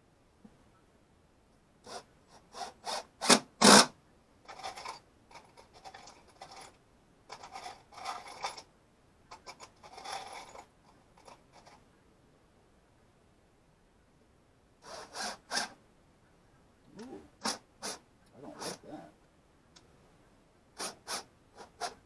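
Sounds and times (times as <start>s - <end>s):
scraping and rubbing strokes: 4.5s - 8.7s, 9.3s - 11.8s.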